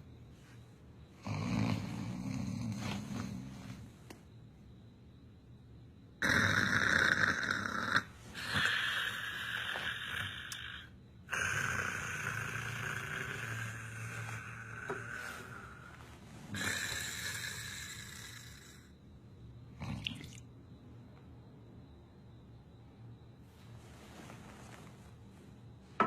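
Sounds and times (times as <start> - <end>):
man snoring: 1.2 - 3.9, 6.2 - 18.9.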